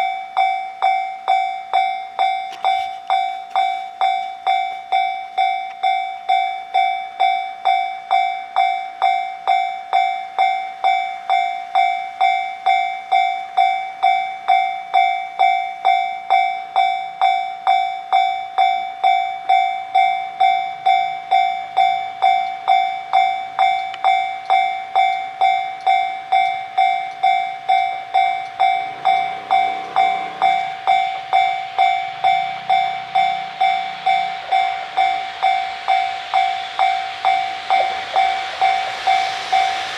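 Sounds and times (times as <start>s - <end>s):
level-crossing alarm bell clanging: 0.0s - 39.9s
approaching train rumble: 23.5s - 39.9s.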